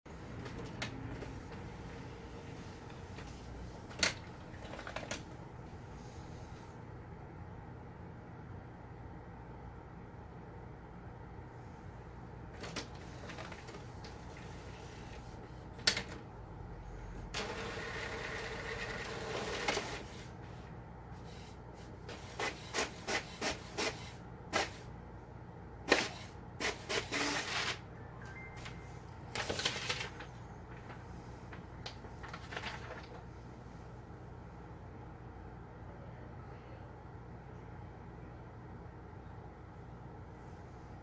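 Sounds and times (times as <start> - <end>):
printer carriage running noisily: 17.3 - 20.3.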